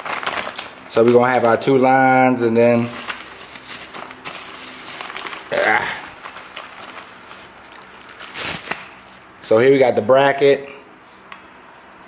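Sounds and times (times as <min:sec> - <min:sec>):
rustling and handling parts: 0:02.7 - 0:09.3
man humming: 0:05.5 - 0:06.1.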